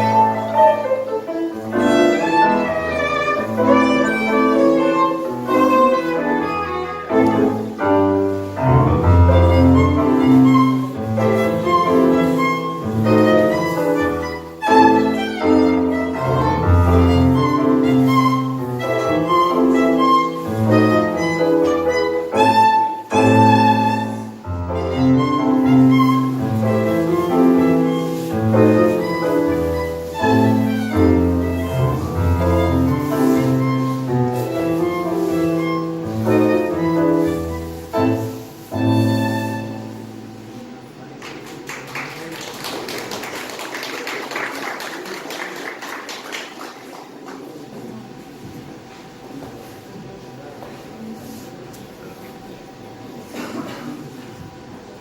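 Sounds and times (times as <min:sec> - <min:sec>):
violin melody: 0:00.0 - 0:40.6
piano: 0:00.0 - 0:55.0.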